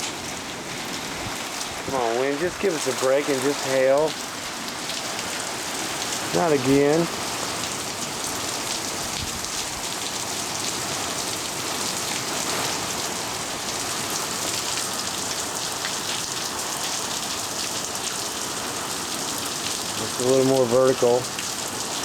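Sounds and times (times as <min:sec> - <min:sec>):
rain and hail pelting: 0:00.0 - 0:22.0.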